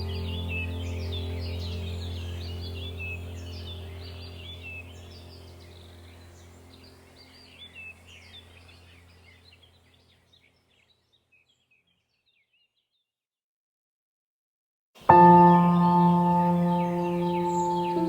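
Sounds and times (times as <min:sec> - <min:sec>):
small birds chirping: 0:00.0 - 0:13.1, 0:15.0 - 0:18.0.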